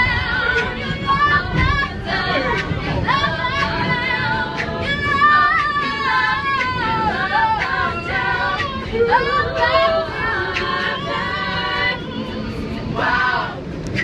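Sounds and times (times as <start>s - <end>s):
a cappella group singing: 0.0s - 14.0s
percussive ticks keeping beat: 0.1s - 8.8s.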